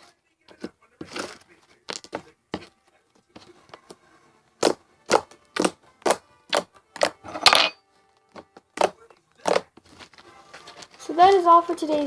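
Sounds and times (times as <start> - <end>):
faint slime crackles: 8.8 - 12.0.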